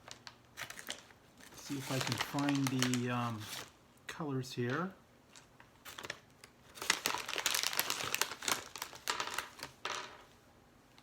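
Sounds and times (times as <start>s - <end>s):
plastic bag crinkling: 0.0s - 3.7s, 5.3s - 10.2s.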